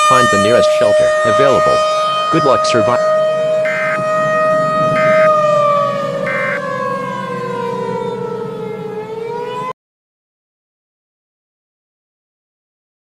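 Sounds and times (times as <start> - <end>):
tornado siren winding down: 0.0 - 9.8.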